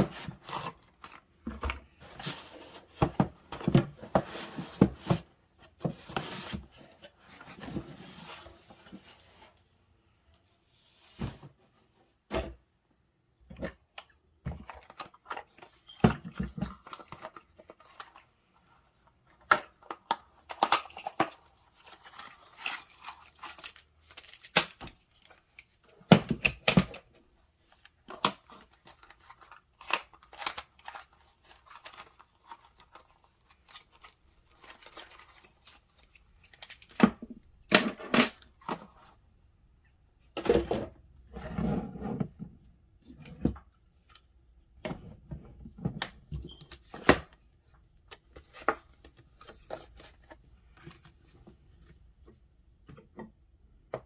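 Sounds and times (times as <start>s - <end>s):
plastic and cardboard rustling: 0.0s - 9.6s, 14.4s - 37.4s, 48.1s - 52.4s.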